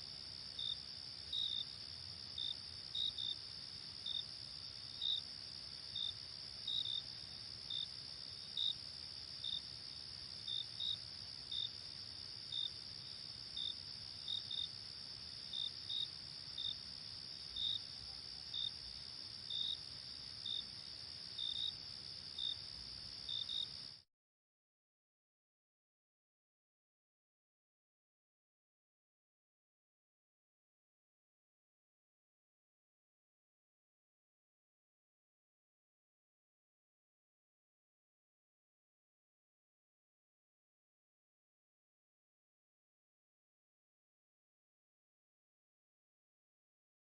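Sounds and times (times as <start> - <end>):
cricket chirps: 0.0 - 24.0
crickets trilling: 0.2 - 24.0.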